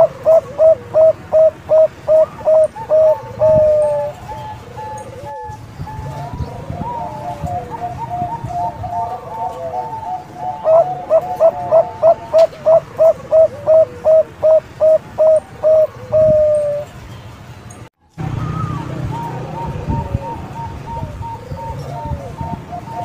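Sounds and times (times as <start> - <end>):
dove cooing: 0.0 - 17.0, 18.3 - 23.0.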